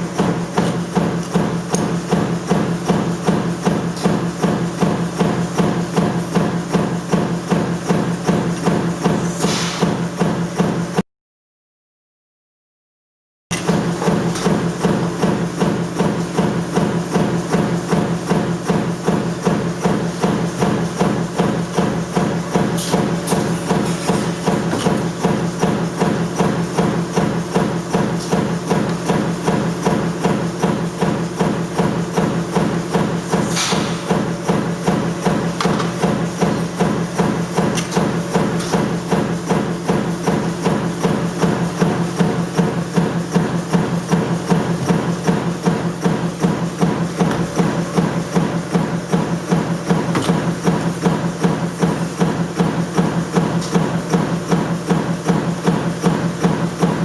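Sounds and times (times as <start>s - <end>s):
brief sharp noise: 9.3s - 9.9s
metal stamping press striking: 13.5s - 57.0s
steady machine hum: 13.6s - 57.0s.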